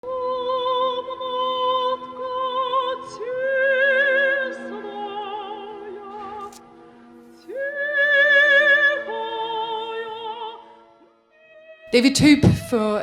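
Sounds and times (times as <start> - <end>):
high voice singing opera: 7.5 - 10.6.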